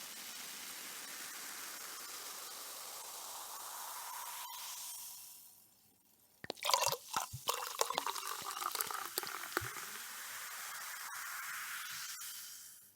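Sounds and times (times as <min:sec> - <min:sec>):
liquid splashing and glugging: 0:06.4 - 0:10.0
champagne pouring into glass: 0:06.4 - 0:10.2
steady fizz: 0:06.4 - 0:12.9.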